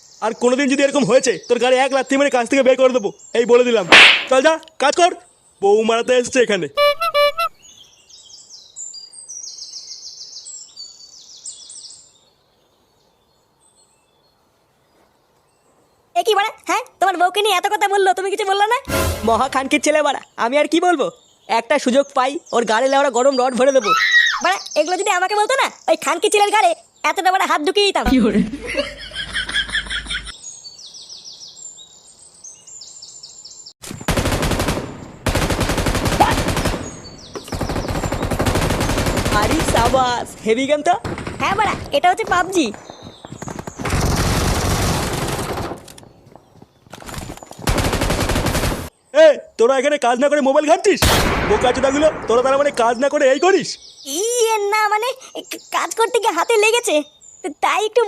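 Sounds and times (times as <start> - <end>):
birds chirping: 0.0 - 58.0
high bird-like chirps: 6.7 - 10.7, 36.2 - 44.7
rapid automatic gunfire: 33.9 - 46.0, 47.6 - 48.9.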